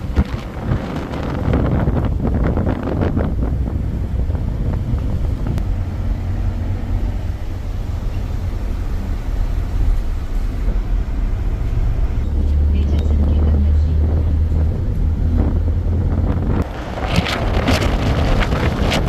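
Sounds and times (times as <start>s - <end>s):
vehicle interior rumble: 0.0s - 19.0s
rattling and clattering: 14.3s - 19.0s.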